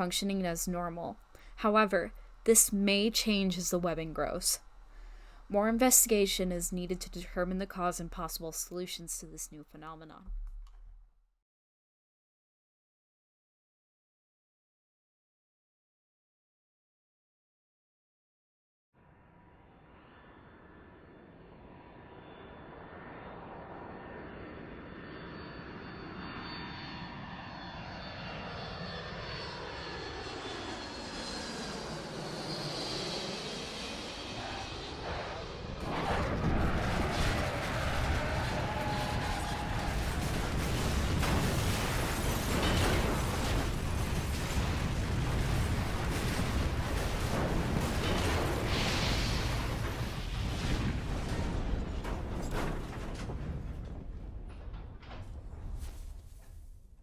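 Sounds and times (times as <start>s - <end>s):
airplane engine flying low: 19.0s - 40.6s
low rumbling noise: 33.0s - 55.6s.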